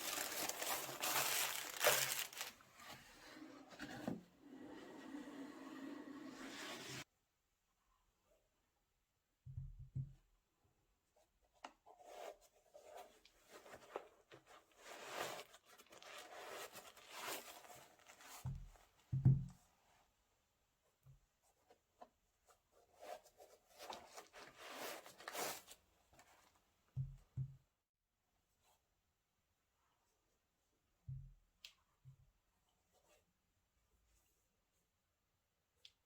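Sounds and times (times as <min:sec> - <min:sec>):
paper packaging crinkling: 0:00.0 - 0:02.6.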